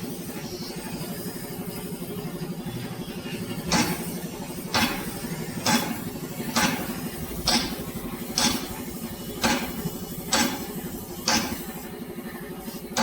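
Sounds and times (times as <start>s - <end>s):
steady mechanical hum: 0.0s - 13.0s
sharp metallic knocks: 4.7s - 8.8s, 9.4s - 11.6s.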